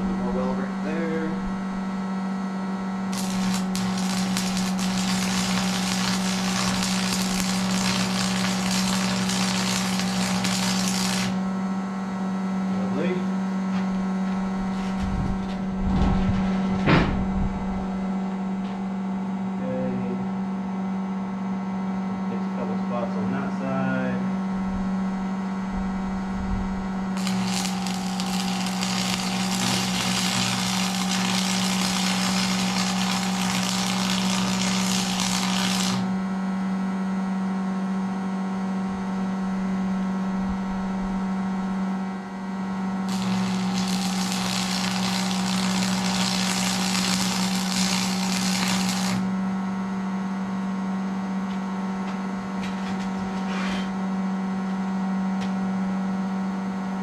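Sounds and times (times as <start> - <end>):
steady low hum: 0.0 - 57.0
arc welding crackle: 3.1 - 11.5, 27.2 - 36.2, 43.1 - 49.3.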